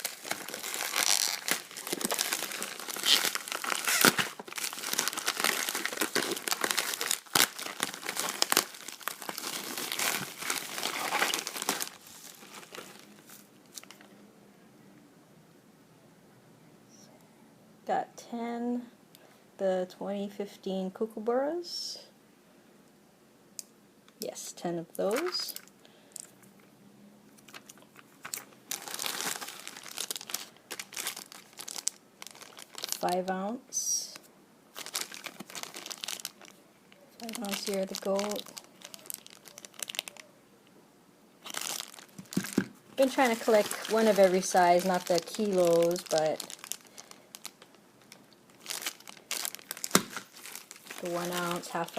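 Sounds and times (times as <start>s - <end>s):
packaging crinkling: 0.0s - 14.1s, 27.5s - 33.3s, 34.7s - 40.3s, 41.4s - 51.9s.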